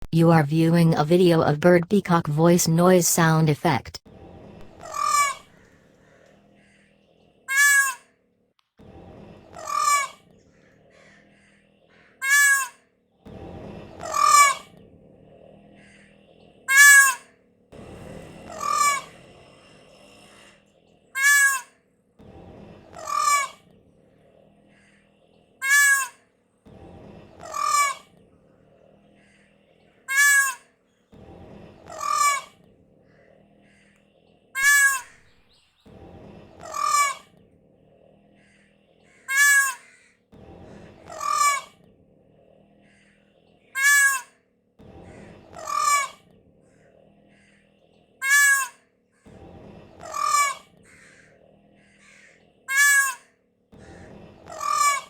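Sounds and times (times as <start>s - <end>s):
peacock calling: 7.5s - 8.0s, 12.2s - 12.8s, 14.0s - 14.6s, 16.7s - 17.2s, 18.5s - 19.1s, 21.2s - 21.7s, 23.0s - 23.6s, 25.6s - 26.2s, 27.4s - 28.0s, 30.1s - 30.6s, 31.9s - 32.5s, 34.6s - 35.3s, 36.6s - 37.2s, 39.2s - 40.0s, 41.1s - 41.7s, 43.8s - 44.3s, 45.6s - 46.2s, 48.2s - 48.8s, 50.0s - 51.2s, 52.0s - 53.2s, 54.5s - 55.0s.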